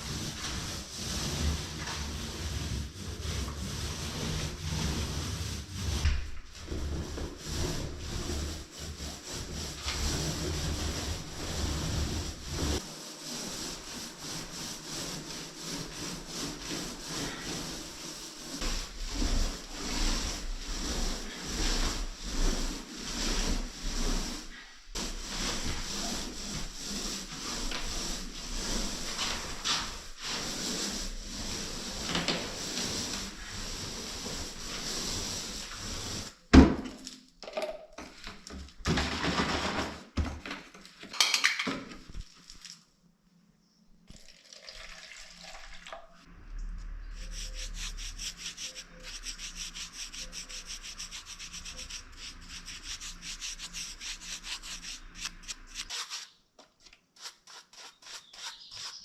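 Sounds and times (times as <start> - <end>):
paintbrush scratching on wood: 0.0 - 6.0, 6.6 - 36.3, 47.0 - 56.3, 57.2 - 59.0.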